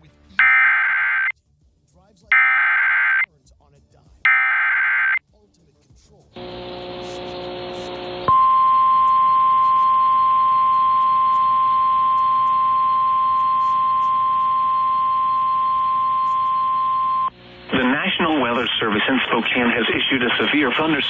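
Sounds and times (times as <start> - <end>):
steady alarm tone: 0.4 - 1.3, 2.3 - 3.2, 4.3 - 5.2, 6.4 - 18.7
low steady tones: 6.4 - 21.0.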